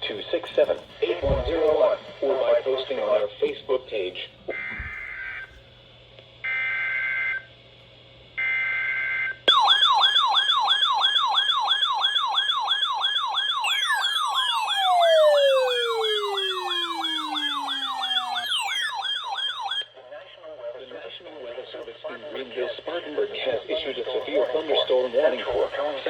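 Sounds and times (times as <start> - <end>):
electronic siren yelping: 9.5 - 19.9
siren tone sliding down: 13.6 - 19.9
harsh two-pitch data bursts: 13.7 - 19.8.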